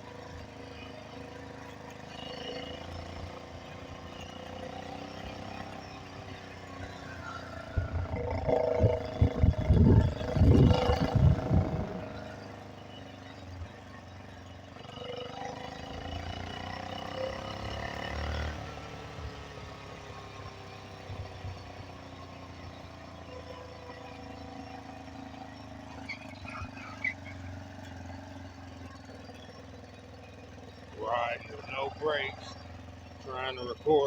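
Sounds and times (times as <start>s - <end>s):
small four-stroke engine running: 0.0s - 34.0s
loud low rumbling buffets: 7.5s - 12.4s, 30.9s - 34.0s.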